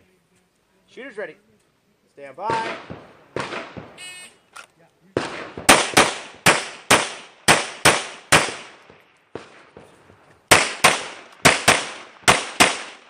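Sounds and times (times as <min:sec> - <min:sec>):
pistol shots in rapid fire: 0:02.5 - 0:04.0, 0:05.2 - 0:09.8, 0:10.5 - 0:13.0.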